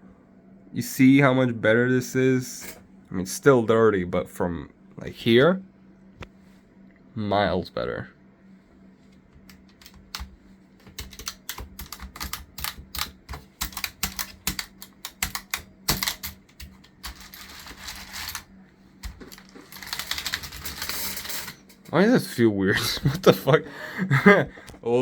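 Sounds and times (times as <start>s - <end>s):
keyboard keys clicking: 10.9s - 18.4s.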